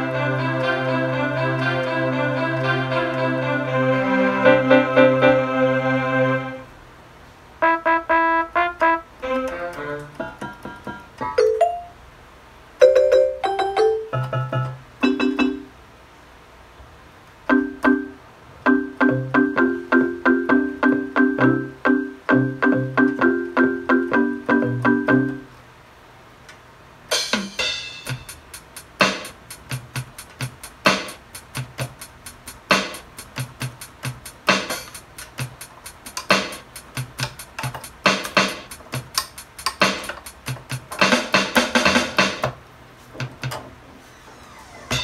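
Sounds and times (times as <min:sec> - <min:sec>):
electronic keyboard piano tone: 0:00.0 - 0:06.7, 0:07.6 - 0:12.0, 0:12.8 - 0:15.8, 0:17.5 - 0:25.5
drum-like clicks: 0:27.2 - 0:42.6.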